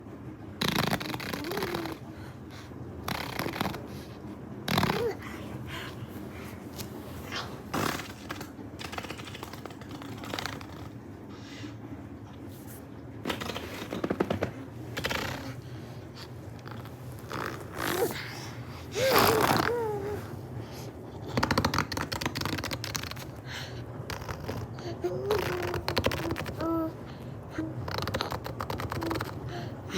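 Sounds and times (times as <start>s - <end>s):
baby blowing raspberries: 0.6s - 4.1s, 4.7s - 6.5s, 7.3s - 11.0s, 13.3s - 23.2s, 24.1s - 26.9s
baby vocalizing: 0.6s - 11.0s, 13.3s - 23.3s, 24.1s - 29.9s.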